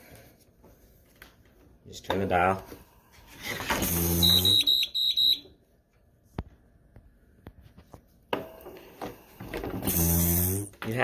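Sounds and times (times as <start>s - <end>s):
ventilator alarm buzz and beeps: 3.8s - 5.6s.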